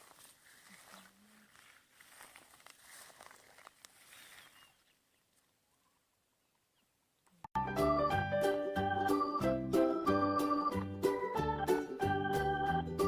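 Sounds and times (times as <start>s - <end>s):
faint outdoor rustling: 0.0s - 7.5s
keyboard music: 7.6s - 13.0s.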